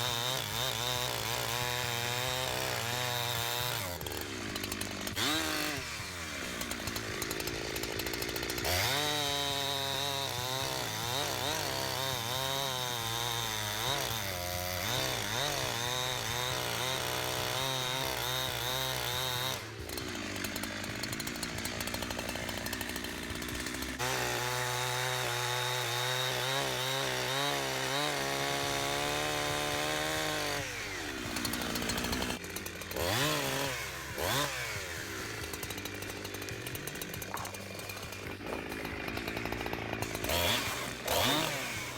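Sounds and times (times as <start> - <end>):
chainsaw cutting logs: 0.0 - 41.9.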